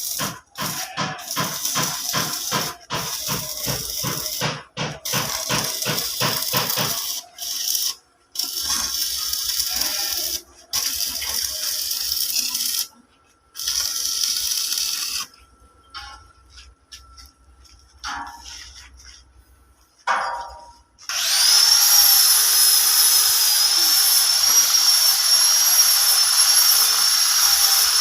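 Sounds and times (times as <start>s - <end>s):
welding arc sizzling and crackling: 0.0s - 15.4s, 21.1s - 28.0s.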